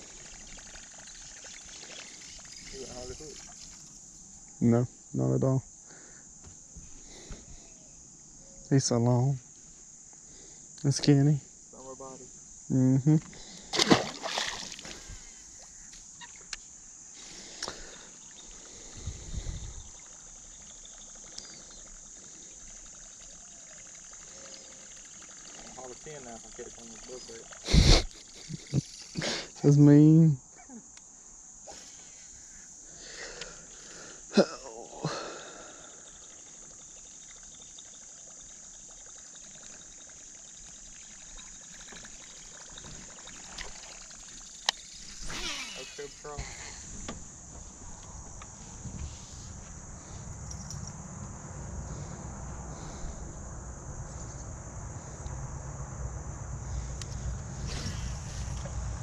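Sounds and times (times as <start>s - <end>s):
faint trickling water: 0.0s - 3.9s, 19.5s - 27.7s, 35.4s - 45.2s
small ticks: 0.0s - 4.6s, 15.6s - 29.7s, 33.3s - 34.0s, 35.4s - 46.2s, 50.4s - 51.4s
insect drone: 0.0s - 59.0s
steady high-pitched hiss: 0.0s - 59.0s.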